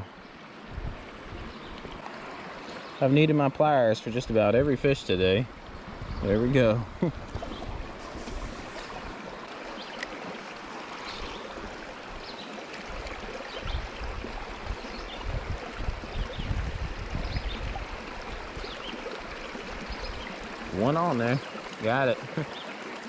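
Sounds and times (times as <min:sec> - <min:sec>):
flowing river water: 0:00.0 - 0:23.0
low rumbling on microphone: 0:00.7 - 0:02.0, 0:05.7 - 0:09.4, 0:12.9 - 0:18.8.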